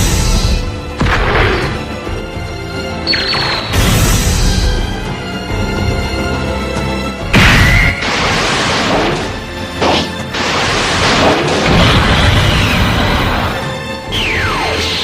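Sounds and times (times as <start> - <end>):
dramatic orchestral music: 0.0 - 15.0
crashing impacts and blasts: 7.3 - 13.8.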